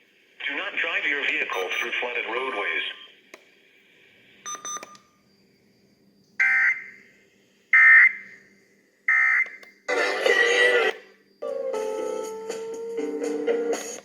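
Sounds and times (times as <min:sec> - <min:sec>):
brief electronic beep: 0:01.5 - 0:01.9.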